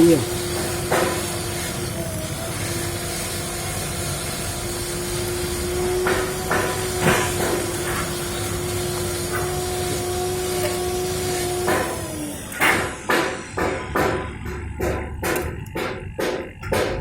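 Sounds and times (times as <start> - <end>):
workshop hum and hiss: 0.0 - 17.0
sharp knocks: 12.6 - 17.0.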